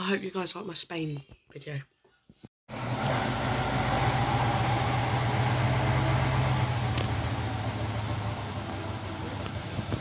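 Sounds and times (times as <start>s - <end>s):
vehicle engine rumble: 2.7s - 10.0s.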